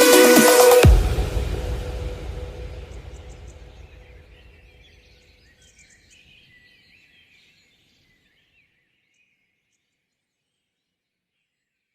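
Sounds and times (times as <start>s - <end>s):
low rumble: 0.8s - 4.7s.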